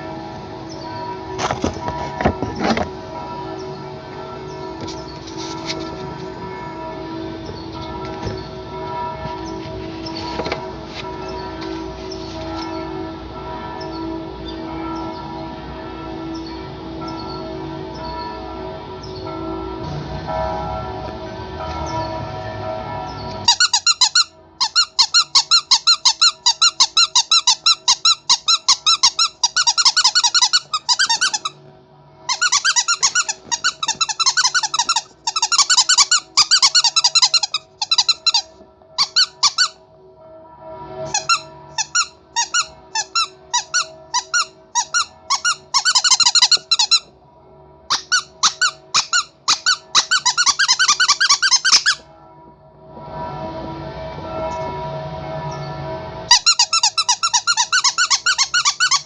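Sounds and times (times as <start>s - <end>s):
squeaky toy squeaking: 23.5s - 31.6s, 32.3s - 39.8s, 41.1s - 47.1s, 47.9s - 52.0s, 56.3s - 59.0s.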